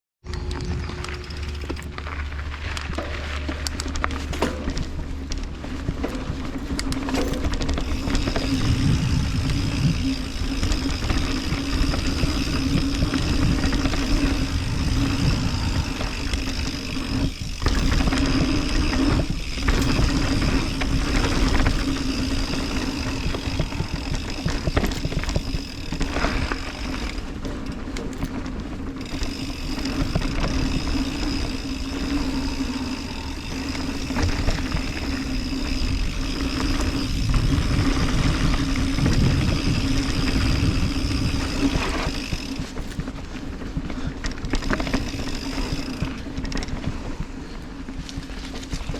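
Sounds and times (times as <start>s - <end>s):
bike humming: 0.2s - 48.9s
wind on microphone: 7.5s - 27.3s, 29.1s - 43.2s.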